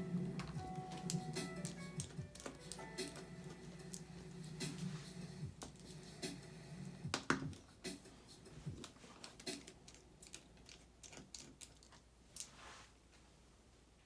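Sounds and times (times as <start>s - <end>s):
loose parts handled: 0.3s - 4.9s
screwdriver clicks and taps: 0.4s - 3.2s.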